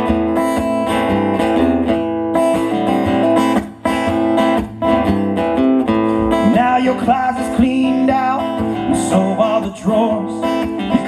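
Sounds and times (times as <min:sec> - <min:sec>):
acoustic guitar strumming chords: 0:00.0 - 0:11.0.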